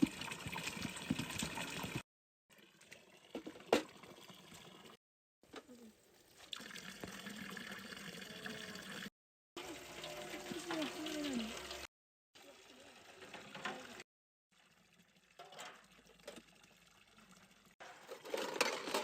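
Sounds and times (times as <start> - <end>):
water running and splashing: 0.0 - 2.0, 6.3 - 17.8.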